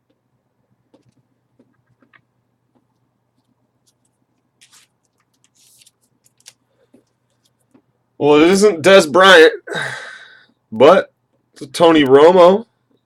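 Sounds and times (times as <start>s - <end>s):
cards rustling: 3.3s - 7.9s.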